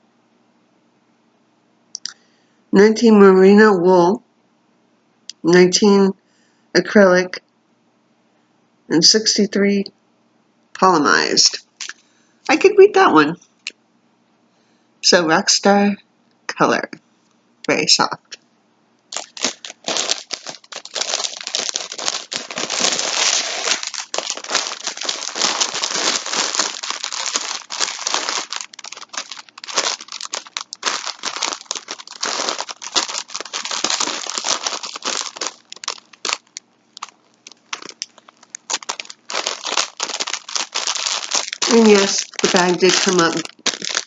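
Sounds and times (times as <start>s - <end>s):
plastic bag crinkling: 19.1s - 44.0s.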